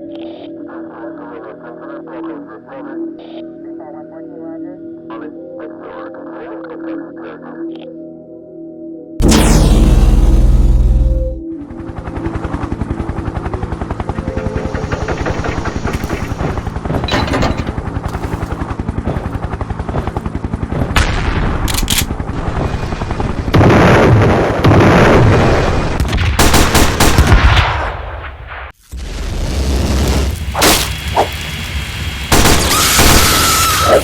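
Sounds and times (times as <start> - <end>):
heavy blasts: 9.2 - 11.4
machine-gun fire: 23.5 - 28.1, 32.3 - 33.8.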